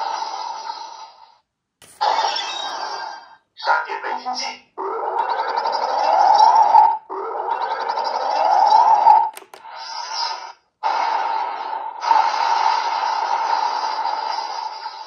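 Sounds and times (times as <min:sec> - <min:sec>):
sharp clicks: 0:09.3 - 0:09.7.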